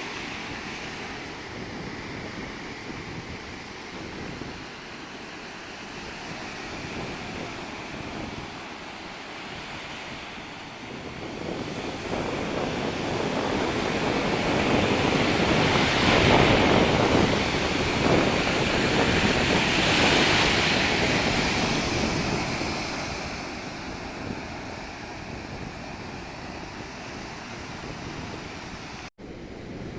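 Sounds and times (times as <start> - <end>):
sea surf washing in: 0.0 - 29.9
wind buffeting microphone: 0.0 - 29.9.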